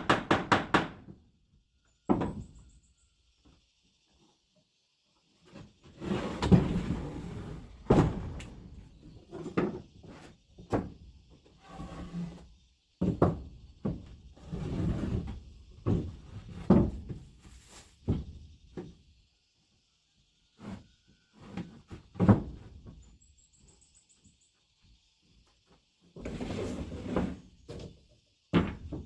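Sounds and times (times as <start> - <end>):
wood scraping and rubbing: 5.5 - 7.8, 11.5 - 12.5, 14.4 - 17.0, 26.2 - 27.5.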